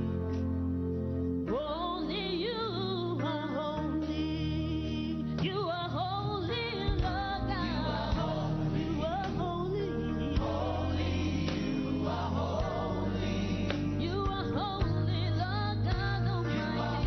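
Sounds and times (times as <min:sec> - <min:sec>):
held bass notes: 0:00.0 - 0:17.0
voices singing together: 0:06.7 - 0:17.0.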